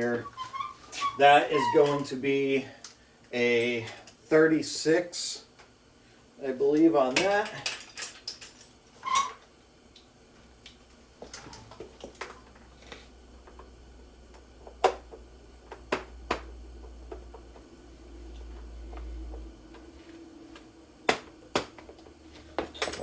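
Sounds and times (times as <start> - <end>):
low hum: 12.6 - 23.0.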